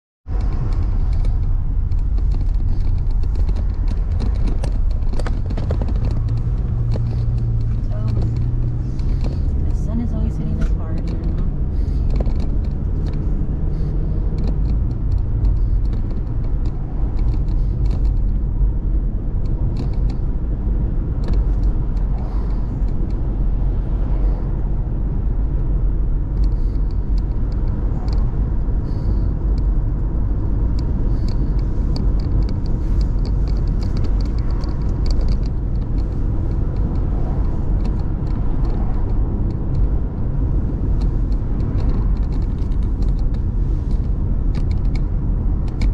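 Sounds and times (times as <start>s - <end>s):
car road and engine rumble: 0.2s - 45.9s.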